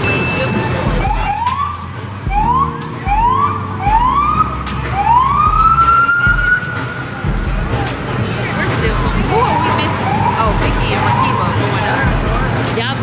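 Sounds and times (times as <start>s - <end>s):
siren whoops: 1.0s - 6.8s
deep low thump: 2.3s - 12.7s.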